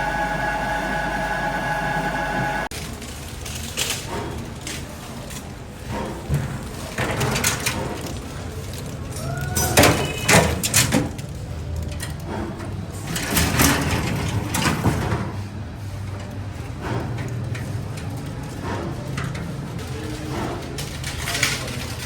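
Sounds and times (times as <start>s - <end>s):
low machine hum: 0.0s - 2.7s.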